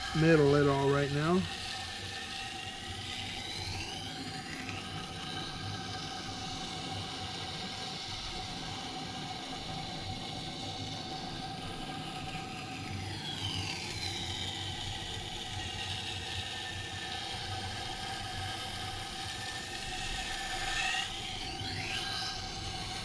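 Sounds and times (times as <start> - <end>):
sharpening wheel humming: 0.0 - 23.0.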